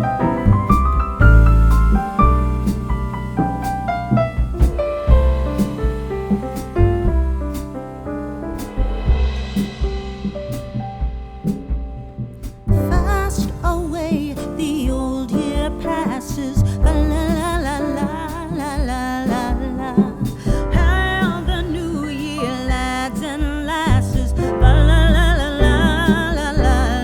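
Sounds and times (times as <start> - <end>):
song with vocals and beat: 12.8 - 27.0.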